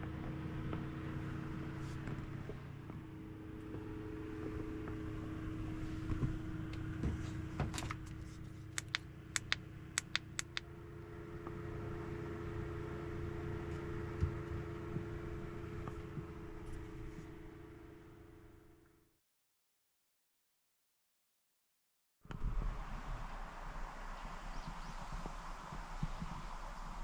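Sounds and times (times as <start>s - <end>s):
mechanical hum with held tones: 0.0s - 19.0s
sharp clicks: 8.8s - 10.7s
low rumble: 22.3s - 27.0s.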